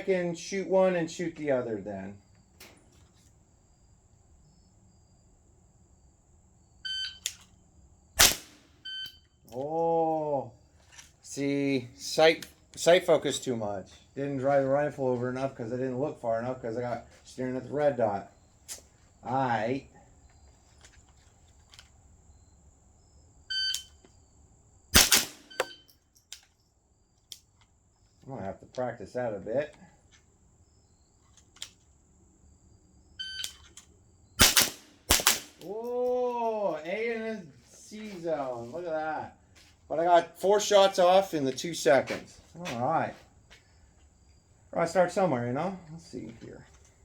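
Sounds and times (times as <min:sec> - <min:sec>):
faint insect chirping: 0:00.0 - 0:47.0
rifle shots: 0:08.2 - 0:08.8, 0:25.0 - 0:25.7, 0:34.4 - 0:35.7
shot timer beep: 0:25.4 - 0:25.9.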